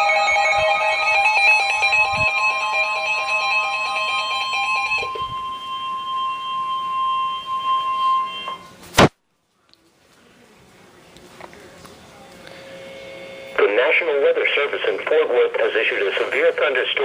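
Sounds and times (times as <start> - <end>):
music chords: 0.0 - 8.6
emergency alert tone: 0.0 - 8.8.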